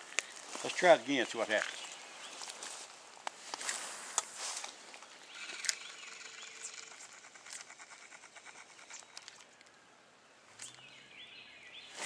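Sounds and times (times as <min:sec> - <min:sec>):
fishing reel ticking: 0:05.4 - 0:09.3.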